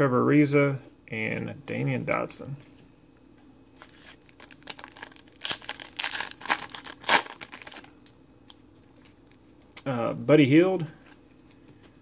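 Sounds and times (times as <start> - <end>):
foil wrapper tearing and crinkling: 3.9 - 8.0.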